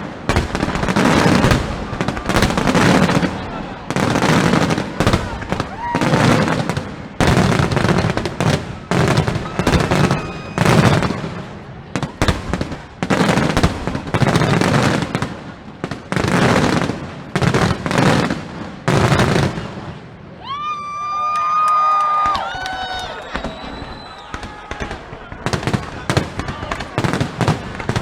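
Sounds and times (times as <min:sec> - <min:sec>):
firework bursts booming and crackling: 0:00.0 - 0:20.4, 0:21.6 - 0:28.0
whistle-like tone: 0:23.2 - 0:24.5.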